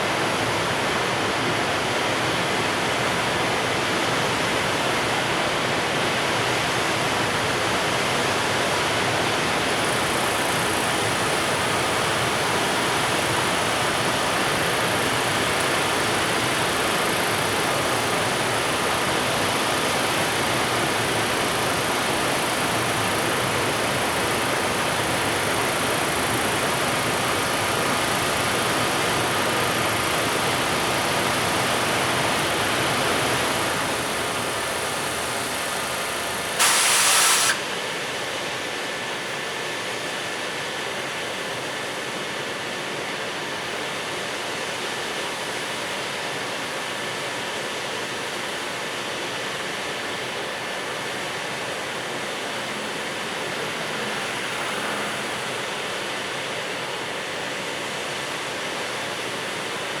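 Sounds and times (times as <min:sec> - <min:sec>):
short loud hiss: 0:36.0 - 0:37.7.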